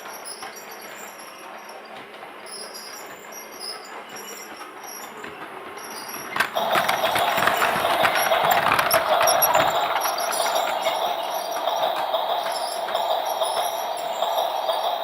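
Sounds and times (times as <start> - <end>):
rattling clicking gears and wheels: 0.0 - 15.0
toy train motor whirring: 6.3 - 14.8.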